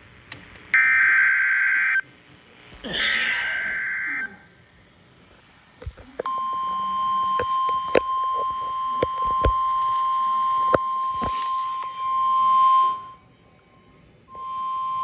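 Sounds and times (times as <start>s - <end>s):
radio static crackles and pops: 0.0s - 13.2s
steady high alarm tone: 0.8s - 2.0s, 3.1s - 4.5s, 6.3s - 15.0s.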